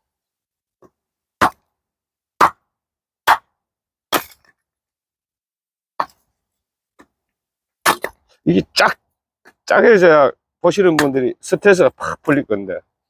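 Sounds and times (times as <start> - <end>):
axe splitting firewood: 0.8 - 1.6, 2.4 - 2.6, 3.2 - 3.5, 4.1 - 4.6, 7.8 - 8.3.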